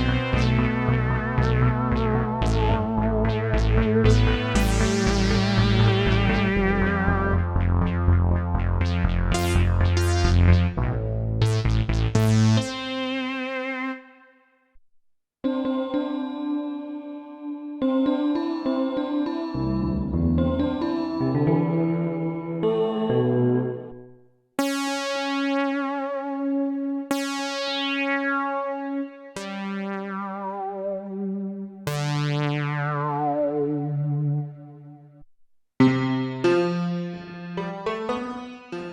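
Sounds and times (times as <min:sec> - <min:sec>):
held synth bass line: 0:00.0 - 0:12.9, 0:19.6 - 0:24.0, 0:27.1 - 0:35.1
synthesizer notes and chord: 0:00.0 - 0:14.4, 0:15.4 - 0:35.2, 0:35.8 - 0:38.9.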